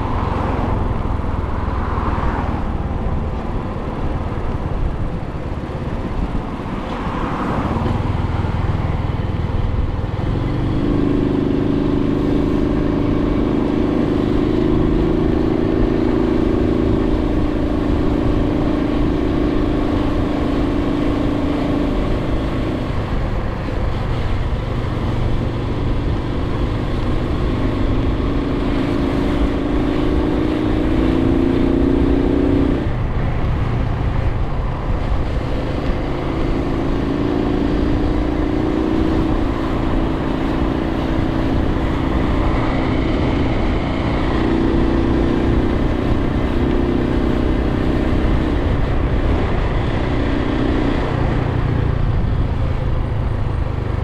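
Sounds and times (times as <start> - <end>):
wind rumble on microphone: 0.0 - 54.0
motorcycle engine running: 7.8 - 54.0.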